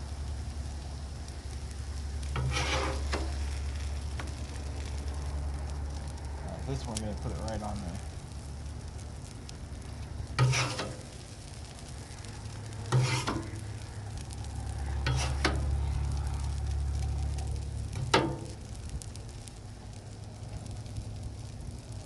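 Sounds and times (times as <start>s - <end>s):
food sizzling on griddle: 0.0s - 22.0s
low steady rumble: 0.0s - 22.0s
metal scraping on griddle: 1.8s - 5.0s, 9.9s - 16.7s, 17.4s - 18.7s.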